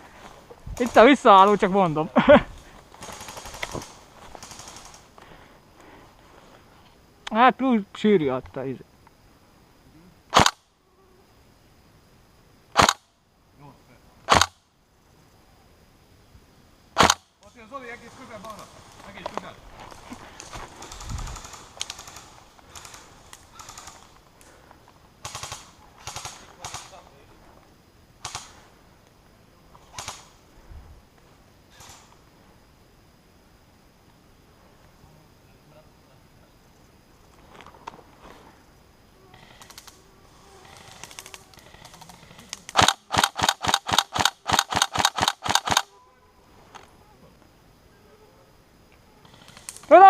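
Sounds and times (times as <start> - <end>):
airsoft rifles firing bursts: 3.0 - 5.0, 20.8 - 24.0, 25.2 - 26.9, 42.7 - 45.9
scattered airsoft clicks: 10.3 - 10.6, 12.8 - 13.0, 14.3 - 14.6, 17.0 - 17.5, 20.4 - 24.5, 25.2 - 27.0, 28.2 - 28.6, 29.9 - 30.3, 39.4 - 40.0, 40.6 - 45.9, 49.2 - 49.9.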